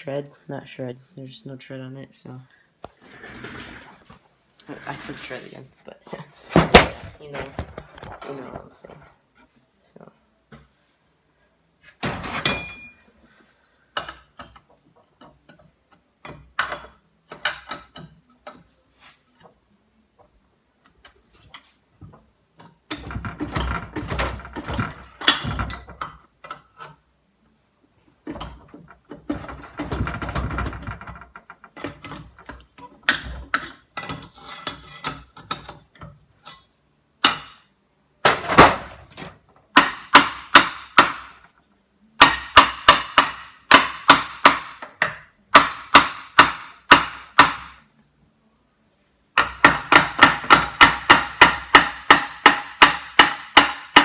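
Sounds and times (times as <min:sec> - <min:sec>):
metal tools clattering and scraping: 0:12.0 - 0:13.1, 0:31.8 - 0:36.7.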